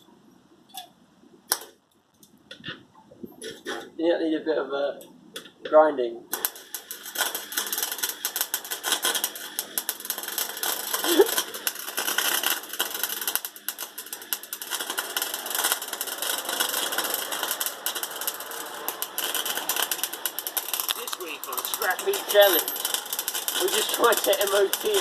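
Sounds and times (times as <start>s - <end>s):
electric arc welding crackle: 6.3s - 25.0s.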